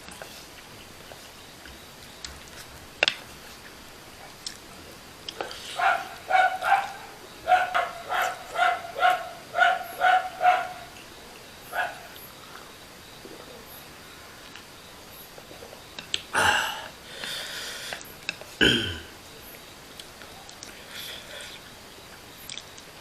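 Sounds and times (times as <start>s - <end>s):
dog barking: 5.4s - 11.0s, 11.7s - 12.2s.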